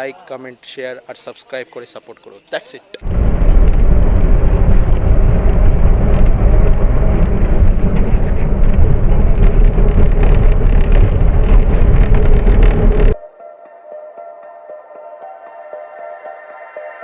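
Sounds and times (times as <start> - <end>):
road vehicle rumble: 3.0 - 13.2.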